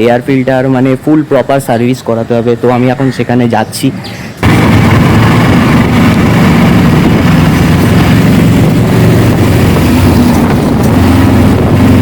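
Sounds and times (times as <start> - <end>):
motorcycle engine running: 4.4 - 12.0
rushing noise: 4.4 - 12.0.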